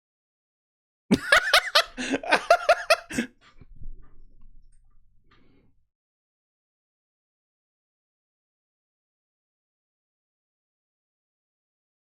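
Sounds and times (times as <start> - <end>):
person laughing: 1.1 - 3.4.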